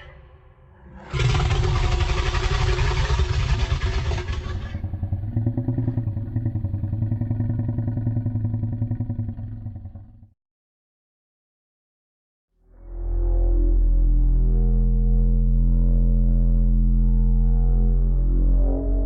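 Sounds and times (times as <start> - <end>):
dinosaur roar: 0.0 - 10.3.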